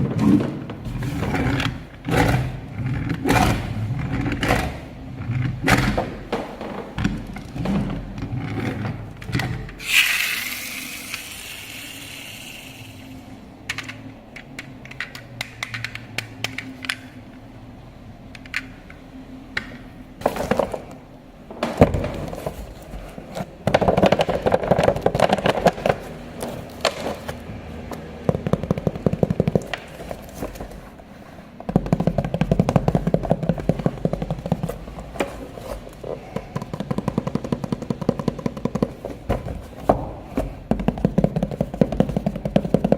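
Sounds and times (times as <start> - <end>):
toy car scraping and clattering: 7.5 - 12.9.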